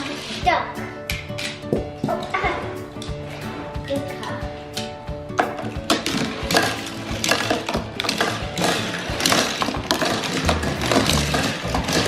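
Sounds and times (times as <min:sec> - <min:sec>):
toy cars clattering down track: 0:05.9 - 0:12.0.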